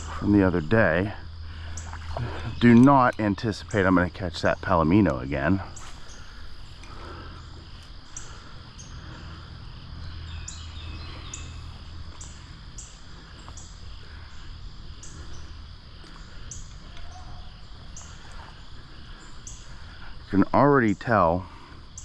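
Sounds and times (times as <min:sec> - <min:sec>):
low steady rumble: 0:00.0 - 0:20.8
crickets chirping: 0:00.0 - 0:22.0.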